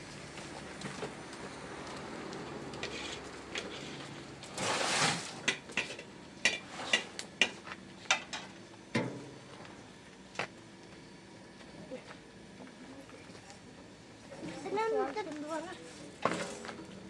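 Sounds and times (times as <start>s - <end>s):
cookware scraping rustle: 2.8s - 7.6s.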